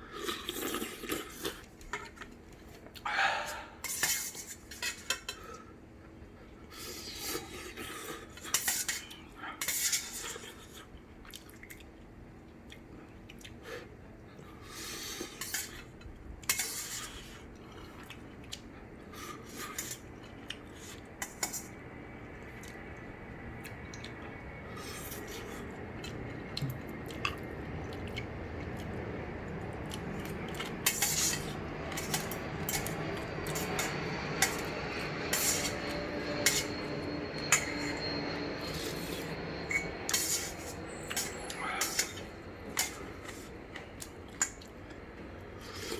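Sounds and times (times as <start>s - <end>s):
utensils clinking against a bowl: 30.2s - 38.0s, 38.6s - 45.0s.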